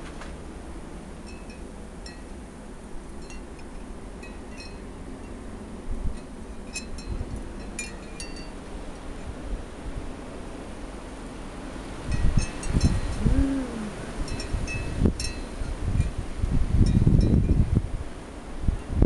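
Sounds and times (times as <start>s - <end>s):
light clinking: 3.2s - 5.4s, 6.1s - 9.2s
snowstorm wind gusting: 8.6s - 19.0s
wind bumps on microphone: 12.0s - 19.0s.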